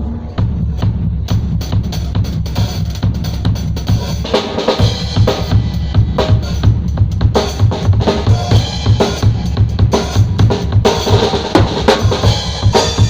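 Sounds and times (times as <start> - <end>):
bass drum beats: 0.0 - 4.2, 4.8 - 13.0
sharp snare hits: 11.5 - 12.4.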